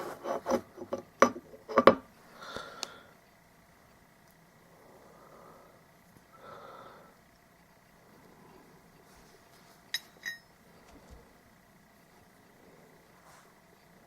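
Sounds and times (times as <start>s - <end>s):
soft breath: 4.7s - 7.2s
steel tool clinking on metal: 9.9s - 10.5s.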